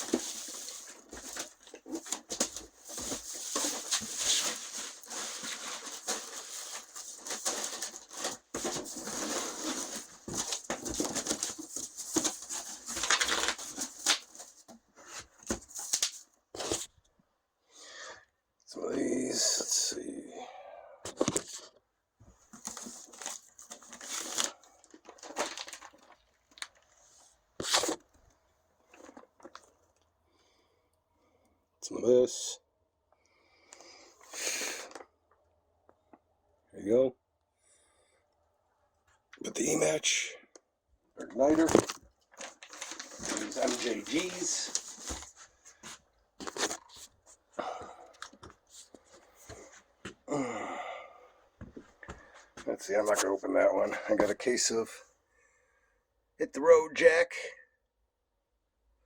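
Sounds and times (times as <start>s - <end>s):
cardboard and plastic rustling: 0.0s - 17.0s, 21.1s - 30.0s, 41.3s - 50.2s.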